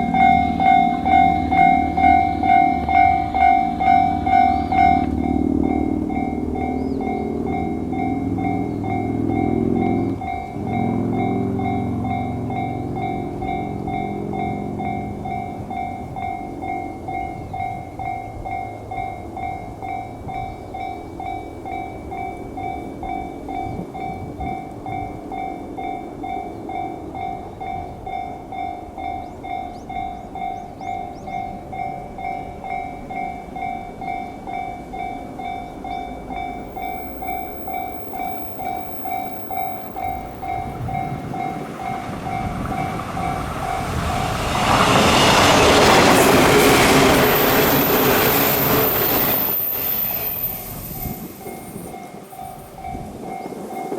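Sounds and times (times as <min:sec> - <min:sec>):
approaching electric train: 0:00.0 - 0:53.9
level crossing bell ringing: 0:36.4 - 0:49.2.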